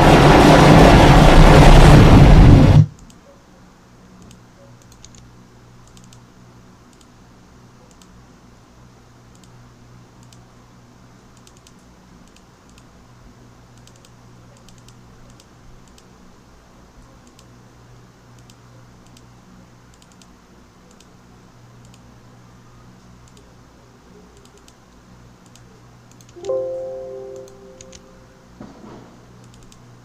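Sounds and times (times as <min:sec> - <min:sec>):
low electrical hum: 0:01.5 - 0:30.0
keyboard and mouse clicks: 0:04.2 - 0:06.2, 0:06.9 - 0:07.1, 0:07.9 - 0:08.2, 0:09.3 - 0:09.6, 0:10.2 - 0:10.4, 0:11.3 - 0:12.9, 0:13.8 - 0:16.1, 0:17.2 - 0:17.5, 0:18.4 - 0:19.3, 0:19.9 - 0:20.3, 0:20.9 - 0:21.2, 0:21.8 - 0:22.1, 0:23.2 - 0:23.5, 0:24.4 - 0:24.8, 0:25.4 - 0:26.4, 0:27.3 - 0:28.0, 0:29.4 - 0:29.8.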